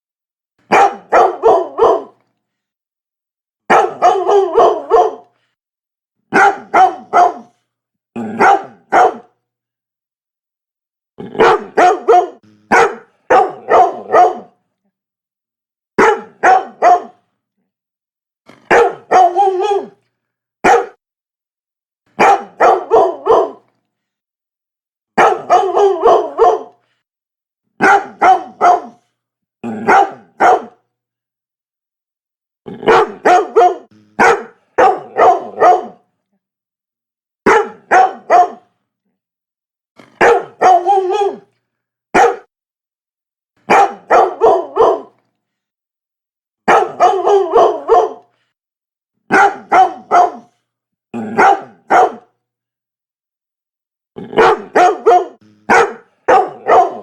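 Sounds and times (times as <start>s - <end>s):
dog barking: 0.7s - 2.2s, 3.7s - 5.3s, 6.3s - 7.6s, 8.3s - 9.4s, 11.3s - 14.6s, 16.0s - 17.2s, 18.6s - 20.0s, 20.6s - 21.0s, 22.2s - 23.7s, 25.2s - 26.8s, 27.8s - 29.1s, 29.7s - 30.8s, 32.8s - 36.0s, 37.5s - 38.7s, 40.0s - 41.5s, 42.1s - 42.5s, 43.6s - 45.2s, 46.6s - 48.3s, 49.3s - 50.6s, 51.2s - 52.4s, 54.3s - 57.0s.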